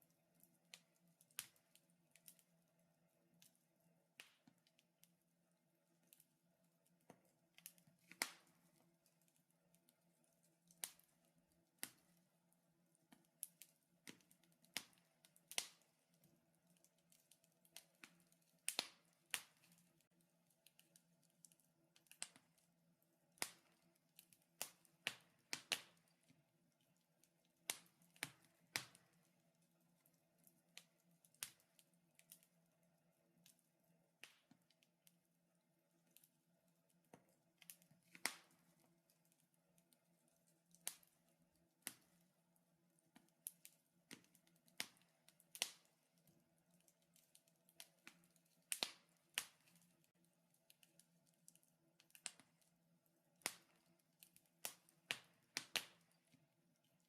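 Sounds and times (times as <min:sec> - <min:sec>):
wood fire crackling: 0:00.0 - 0:35.2, 0:35.9 - 0:57.0.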